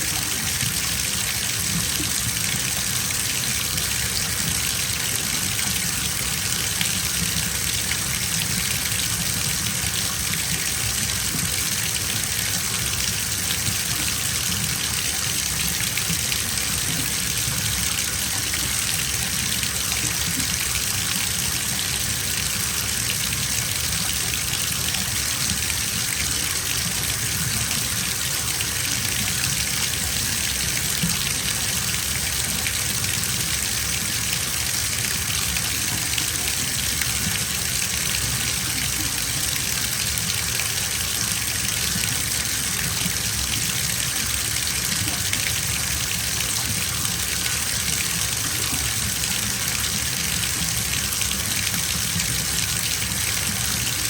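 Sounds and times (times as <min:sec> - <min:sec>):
water pouring into bathtub: 0:00.0 - 0:54.0.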